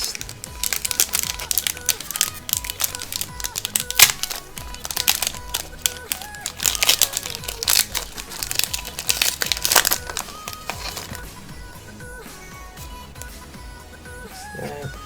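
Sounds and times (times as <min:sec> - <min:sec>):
foil wrapper crinkling: 0:00.0 - 0:11.3
background music: 0:00.0 - 0:15.0.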